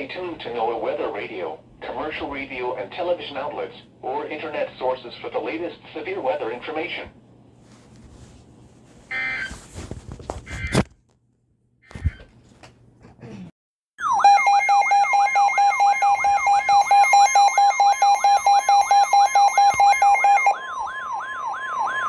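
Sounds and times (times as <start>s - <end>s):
emergency alert attention tone: 14.0s - 22.0s
siren-like pitch sweep: 14.0s - 22.0s.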